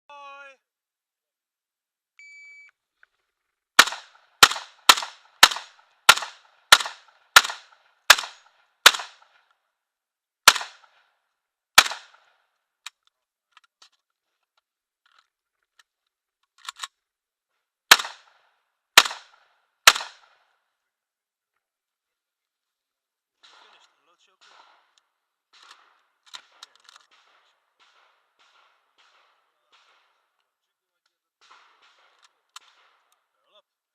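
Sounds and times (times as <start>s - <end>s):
shotgun shots: 3.8s - 9.4s, 10.4s - 11.1s, 11.8s - 12.4s, 17.9s - 18.4s, 19.0s - 20.4s, 23.4s - 30.4s, 31.4s - 33.2s.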